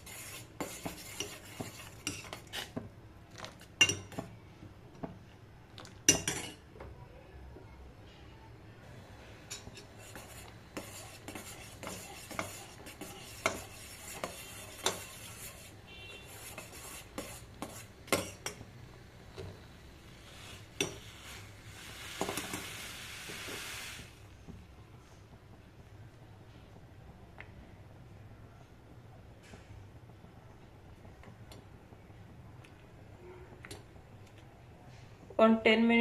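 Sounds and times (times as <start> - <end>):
spoon stirring in a pan: 0.0 - 4.3, 5.8 - 6.7, 9.3 - 23.9
hiss: 20.1 - 24.2.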